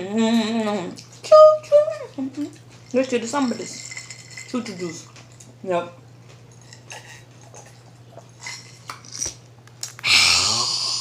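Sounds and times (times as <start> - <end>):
breathy voiced exhale: 10.0 - 11.0.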